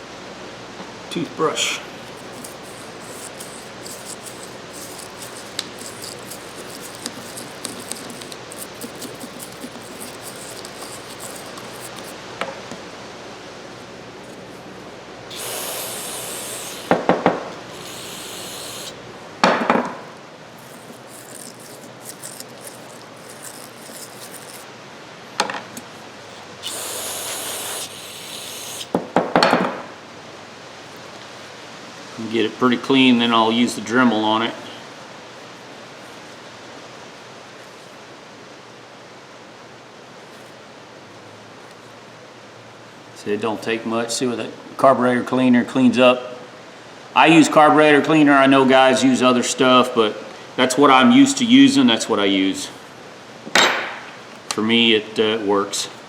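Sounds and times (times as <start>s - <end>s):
aerosol spray hissing: 2.0s - 12.2s, 15.3s - 19.0s, 20.6s - 24.7s, 26.3s - 29.0s
toothbrush scrubbing metal: 2.0s - 12.2s, 14.2s - 19.0s, 20.6s - 24.7s, 25.8s - 28.9s.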